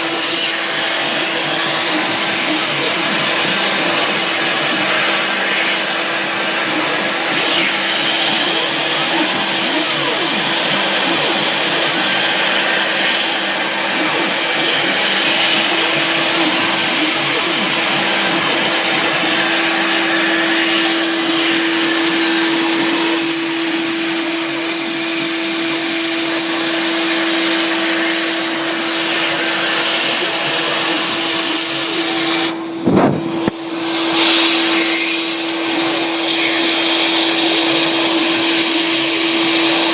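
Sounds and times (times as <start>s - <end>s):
cutter hissing through wood: 0.0s - 39.9s
mill spindle motor running: 0.0s - 39.9s
stepper motors whining: 0.0s - 39.9s.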